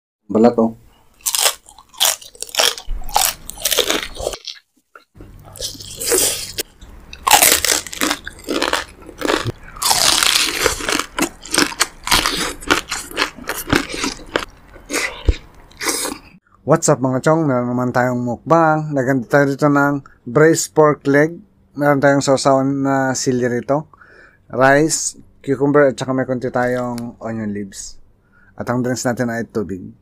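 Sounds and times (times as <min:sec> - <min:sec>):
crunchy biting and chewing: 0:01.1 - 0:16.4.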